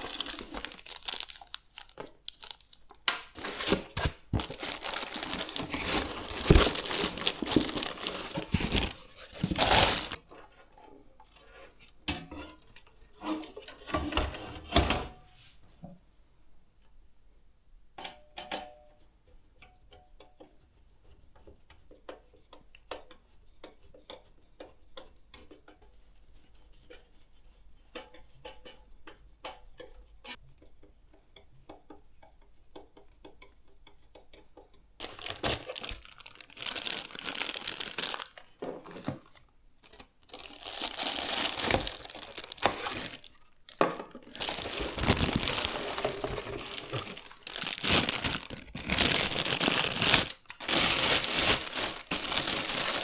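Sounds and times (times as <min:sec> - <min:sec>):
packaging crinkling and tearing: 0:00.0 - 0:10.2, 0:35.0 - 0:53.0.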